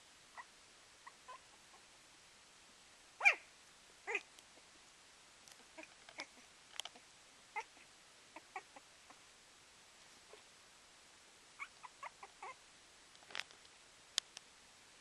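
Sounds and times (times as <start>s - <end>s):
puppy whimpering and yipping: 0.4s - 1.8s, 3.2s - 3.5s, 4.1s - 4.3s, 7.6s - 8.8s, 11.6s - 12.6s.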